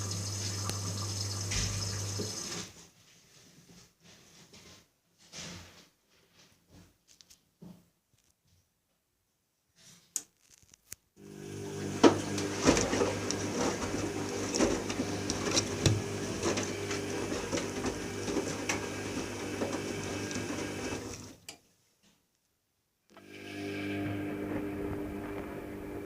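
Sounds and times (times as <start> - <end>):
washing machine running: 0.0 - 2.7, 11.2 - 21.4, 23.2 - 26.0.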